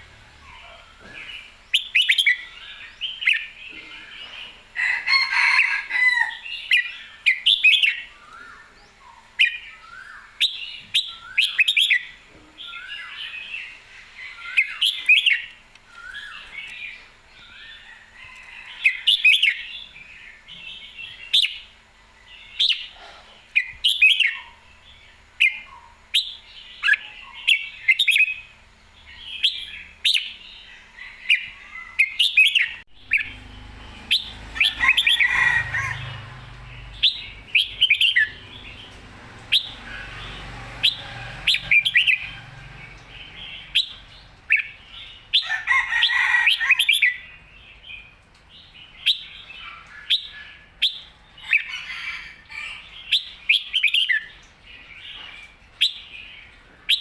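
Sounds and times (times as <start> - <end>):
bulbul singing bright phrases: 31.3 - 45.4
low rumble: 32.9 - 44.5.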